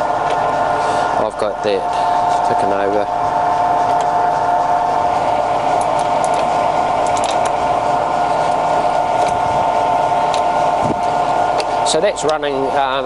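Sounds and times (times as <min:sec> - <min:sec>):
lathe whining: 0:00.0 - 0:13.0.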